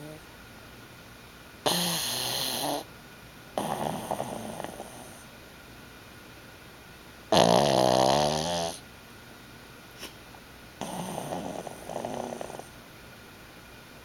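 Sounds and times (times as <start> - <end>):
dog snoring: 1.6 - 2.9, 3.6 - 5.3, 7.3 - 8.8, 10.8 - 12.8.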